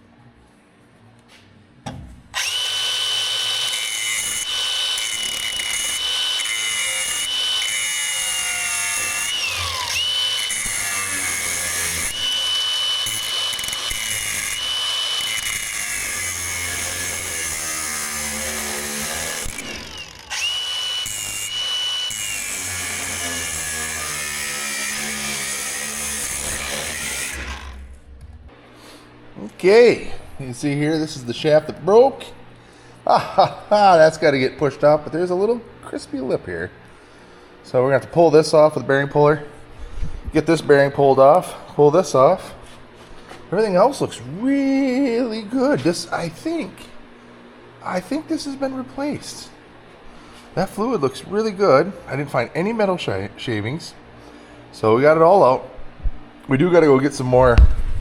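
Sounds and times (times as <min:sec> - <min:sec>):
angle grinder cutting steel: 0:02.4 - 0:28.0.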